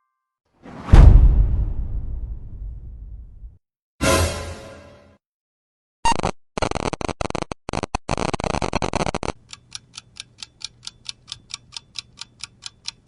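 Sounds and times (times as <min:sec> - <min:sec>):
clock ticking: 0:09.4 - 0:13.0.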